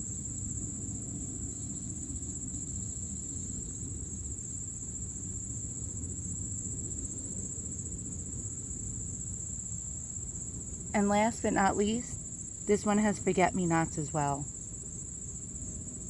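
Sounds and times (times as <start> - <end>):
crickets trilling: 0.0 - 16.0.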